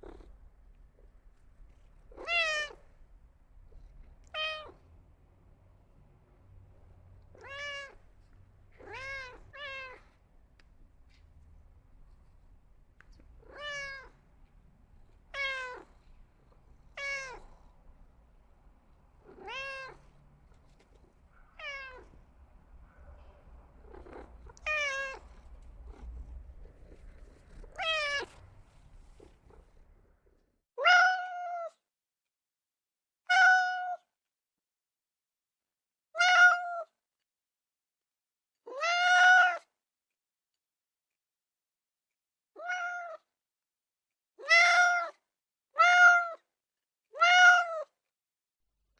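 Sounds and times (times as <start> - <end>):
faint background hum: 0.0 - 30.5
cat meowing: 2.1 - 2.9, 4.2 - 4.8, 7.3 - 8.1, 8.7 - 10.1, 13.4 - 14.2, 15.3 - 16.0, 16.8 - 17.6, 19.2 - 20.1, 21.3 - 22.3, 23.8 - 29.4, 30.8 - 31.7, 33.3 - 34.1, 36.2 - 36.9, 38.7 - 39.7, 42.6 - 43.3, 44.4 - 45.2, 45.8 - 46.5, 47.1 - 48.0.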